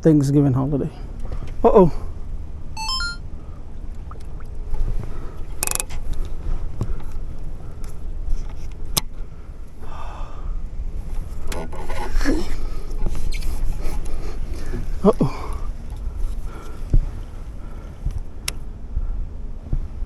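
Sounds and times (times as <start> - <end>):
wind rumbling on microphone: 10.4 - 20.0.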